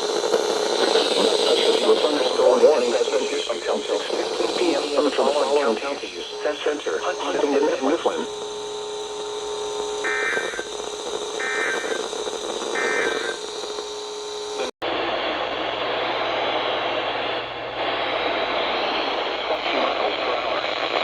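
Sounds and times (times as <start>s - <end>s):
radio hiss: 0.0s - 21.0s
radio hum: 0.0s - 21.0s
digital data tone bursts: 0.9s - 14.7s.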